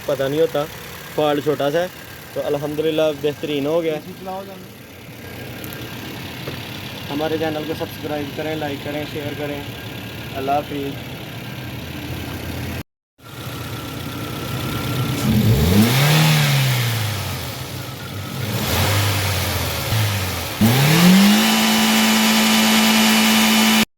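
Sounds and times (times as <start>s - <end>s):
car engine idling: 0.0s - 23.6s
engine revving: 14.2s - 23.9s.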